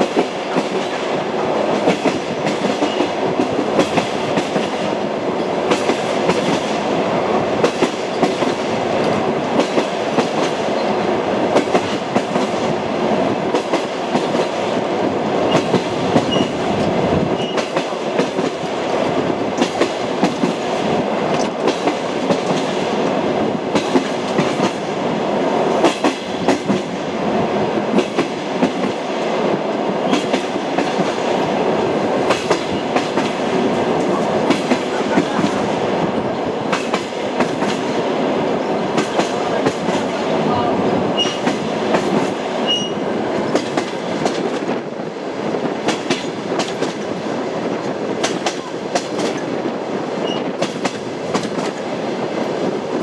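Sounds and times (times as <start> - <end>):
train rumbling: 0.0 - 53.0
wheels clacking on rail joints: 41.2 - 44.8, 50.2 - 51.8.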